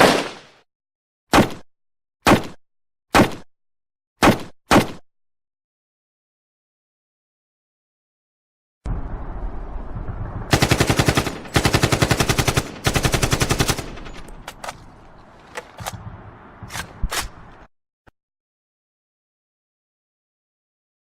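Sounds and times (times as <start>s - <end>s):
low rumbling background: 8.9s - 17.7s
automatic rifle fire: 10.5s - 14.7s.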